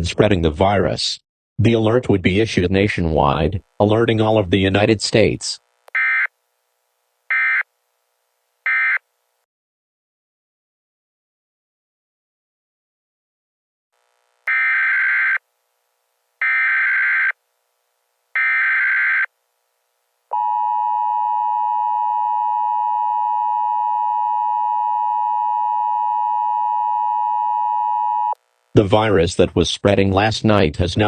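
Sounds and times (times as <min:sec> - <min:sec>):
buzzing data tones: 0:14.5 - 0:15.4.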